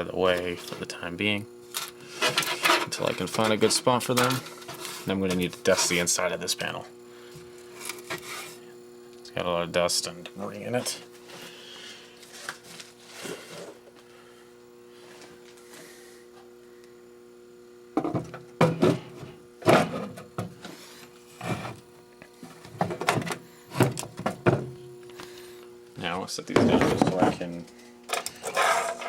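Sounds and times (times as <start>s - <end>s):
steady electrical hum: 0.0s - 29.0s.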